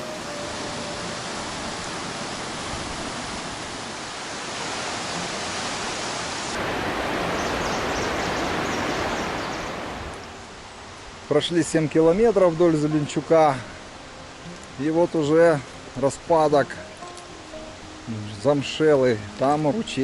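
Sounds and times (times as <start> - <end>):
river rushing: 0.0 - 20.0.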